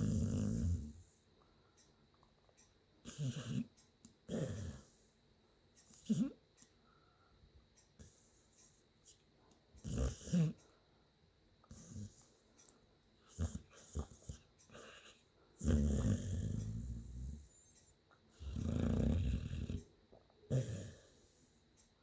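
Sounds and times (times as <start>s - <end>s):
dog snoring: 0.0s - 1.2s, 3.0s - 5.1s, 5.9s - 6.4s, 9.8s - 10.6s, 11.6s - 12.4s, 13.2s - 19.9s, 20.5s - 21.6s.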